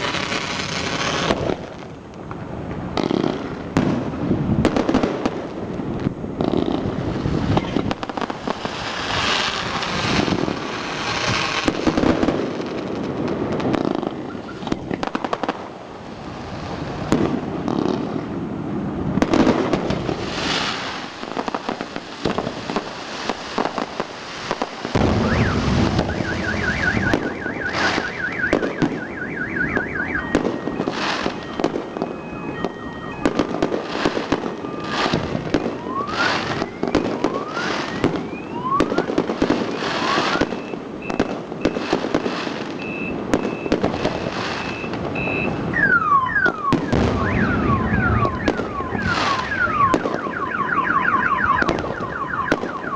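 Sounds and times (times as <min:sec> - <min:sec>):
fireworks bursting and crackling: 0:00.0 - 0:52.9
warbling electronic tone: 0:25.0 - 0:33.3, 0:44.6 - 0:52.4
short beeps: 0:25.2 - 0:33.4, 0:40.1 - 0:41.9, 0:42.8 - 0:52.9.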